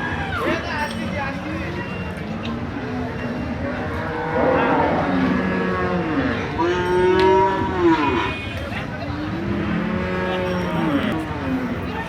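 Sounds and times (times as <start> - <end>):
cow mooing: 9.6 - 11.6.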